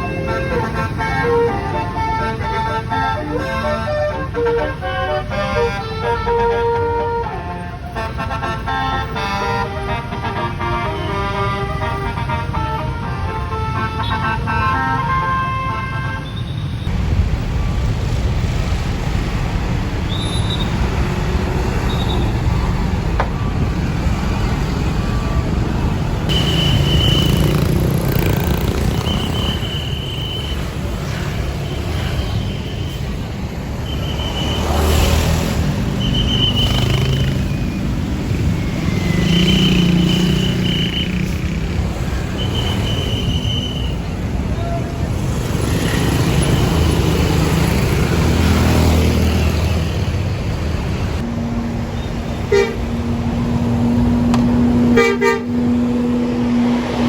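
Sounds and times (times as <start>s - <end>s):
multi-tone bus horn melody: 0.0s - 16.5s, 26.3s - 30.9s, 52.3s - 53.1s, 53.8s - 56.6s
passing vehicle engines: 0.0s - 32.4s, 33.0s - 57.0s.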